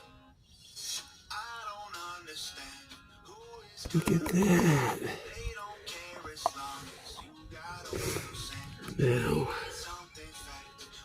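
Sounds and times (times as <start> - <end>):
background music with melody: 0.0 - 11.0.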